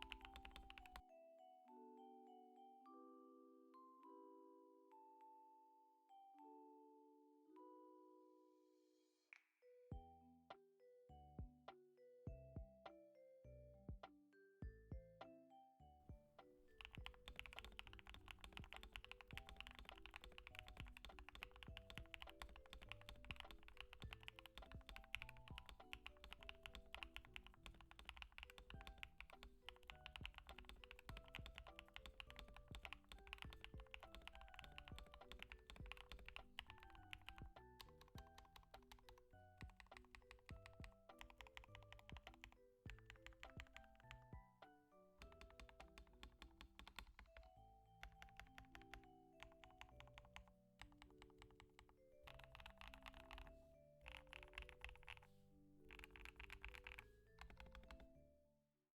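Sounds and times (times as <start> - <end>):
fast typing on mechanical keyboard: 0.0 - 1.0, 16.7 - 44.3, 45.2 - 55.3, 55.9 - 58.1.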